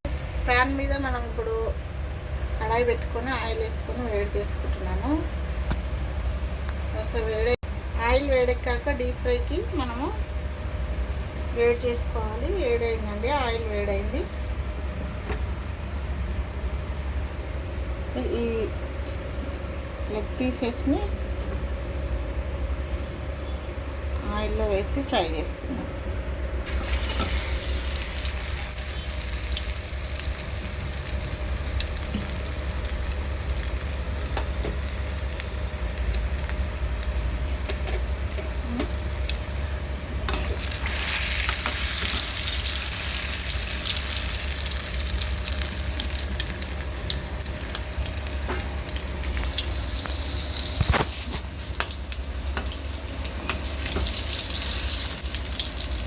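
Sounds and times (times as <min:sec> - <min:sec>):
chicken deep-frying in oil: 0:26.7 - 0:56.0.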